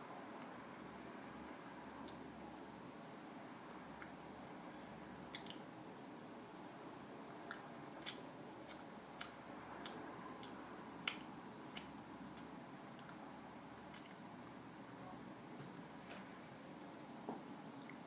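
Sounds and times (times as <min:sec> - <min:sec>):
chewing crunchy frozen fruit: 0:05.1 - 0:05.7, 0:07.3 - 0:13.2, 0:13.8 - 0:14.3.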